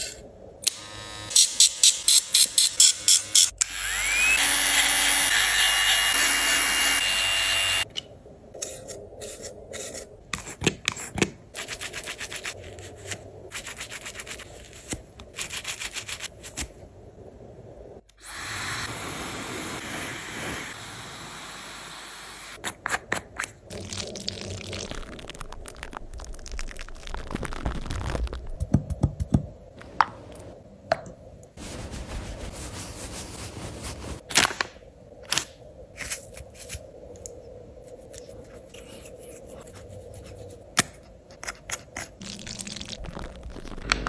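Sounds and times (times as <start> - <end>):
small motor running: 0.7 - 5.8
steady hiss: 18.4 - 22.6, 31.6 - 34.2
rhythmic rubbing strokes: 31.6 - 34.2.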